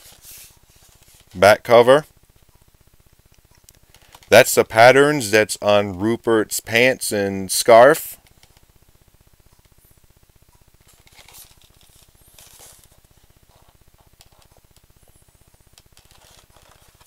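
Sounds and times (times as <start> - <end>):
record sleeve rustling: 0.0 - 1.5, 3.8 - 4.4, 10.8 - 17.0
low steady hum: 0.0 - 17.0.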